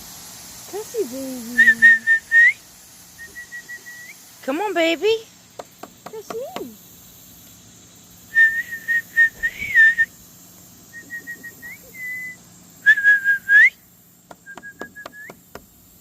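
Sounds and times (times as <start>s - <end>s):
person whistling: 1.6s - 2.6s, 3.2s - 4.2s, 8.3s - 10.1s, 10.9s - 13.8s, 14.4s - 15.4s.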